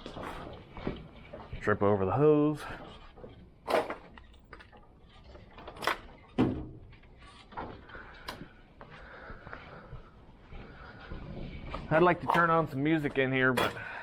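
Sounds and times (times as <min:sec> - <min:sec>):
tools knocking and clunking: 0:02.8 - 0:08.5.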